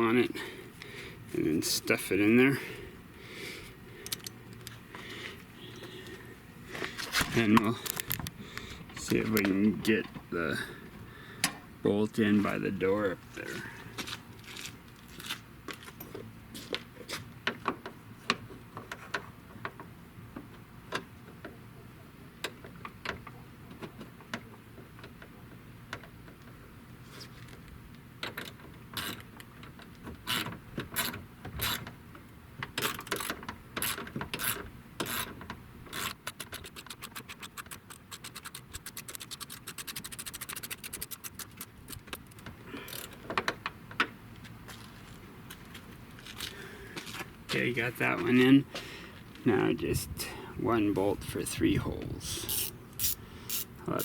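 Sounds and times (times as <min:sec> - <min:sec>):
tool handling clicks and knocks: 0:04.0 - 0:04.8, 0:32.6 - 0:44.2
ratchet clicking: 0:32.8 - 0:35.3, 0:35.9 - 0:43.2, 0:52.5 - 0:53.7.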